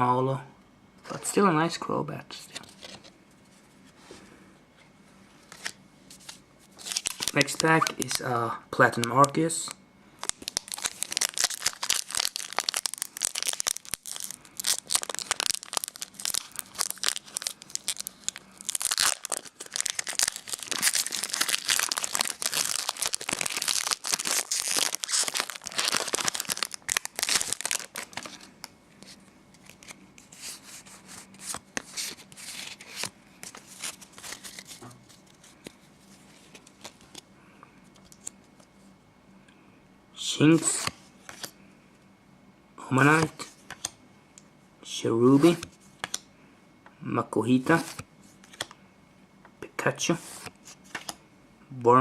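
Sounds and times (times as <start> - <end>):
foil wrapper crinkling: 6.8 - 8.3, 10.2 - 28.7
foil tearing: 10.2 - 28.4.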